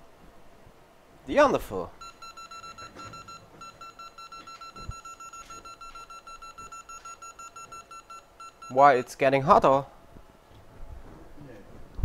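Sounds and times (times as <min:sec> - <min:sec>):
rapid electronic beeping: 0:02.0 - 0:09.2.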